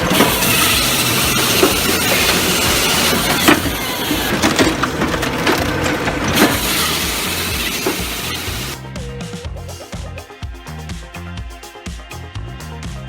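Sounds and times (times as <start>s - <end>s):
machine grinding wood: 0.0s - 9.0s.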